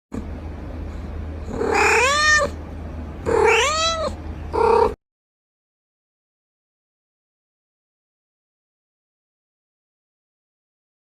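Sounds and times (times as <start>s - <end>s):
cat meowing: 1.5s - 2.6s, 3.2s - 5.0s.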